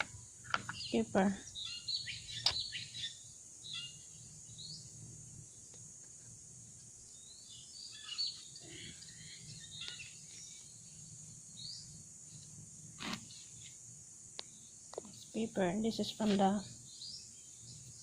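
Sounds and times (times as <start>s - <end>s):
birds chirping: 0.0s - 5.8s, 7.0s - 12.5s, 14.4s - 18.0s
insects droning: 0.0s - 18.0s.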